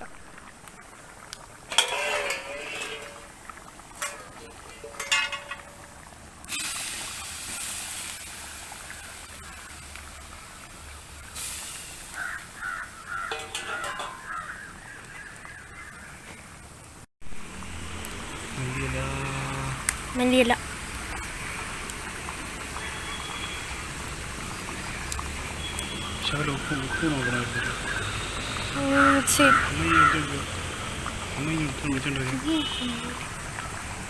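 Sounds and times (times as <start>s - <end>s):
steady hiss: 1.6s - 14.5s, 17.6s - 34.0s
crows cawing: 12.1s - 16.3s, 28.8s - 30.5s.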